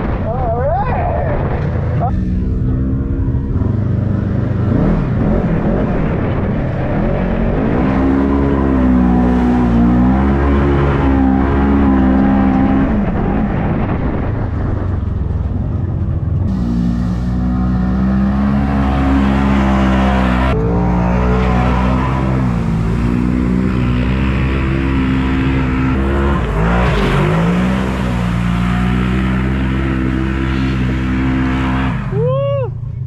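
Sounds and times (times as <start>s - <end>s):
off-road vehicle engine revving: 0.0s - 33.0s.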